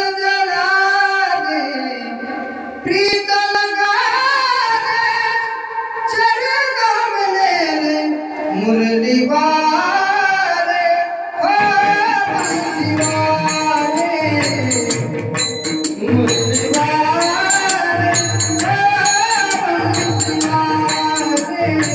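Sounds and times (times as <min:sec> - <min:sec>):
person singing devotional song: 0:00.0 - 0:21.9
jingling metal hand percussion: 0:11.6 - 0:21.9.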